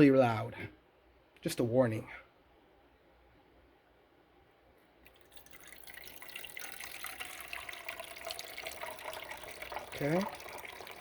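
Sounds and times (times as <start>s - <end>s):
water pouring into container: 5.0s - 11.0s.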